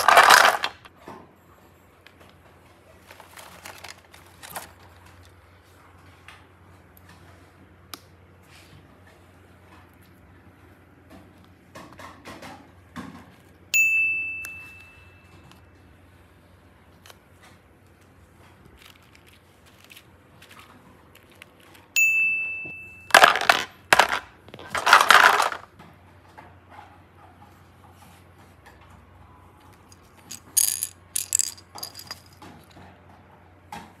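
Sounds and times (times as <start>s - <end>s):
bell-like ding: 13.8s - 15.4s, 22.0s - 23.1s.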